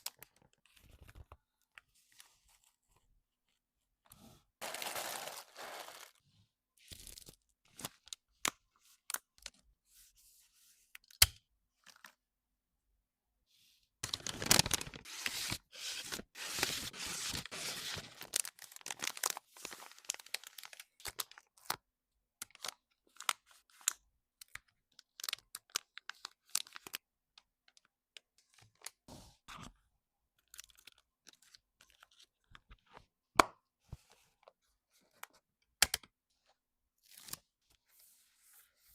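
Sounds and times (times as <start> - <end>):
wrapping tearing and crinkling: 4.6 - 6.2, 14.0 - 21.8.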